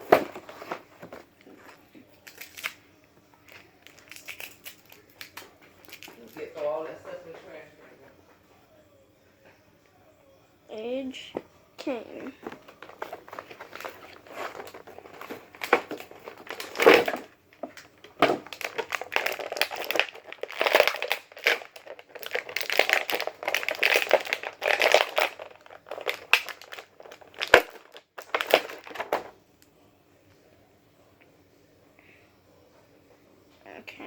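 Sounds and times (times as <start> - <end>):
plastic packaging crinkling: 2.2 - 2.8, 3.5 - 6.6, 12.4 - 29.3
packaging snapping: 12.4 - 29.3.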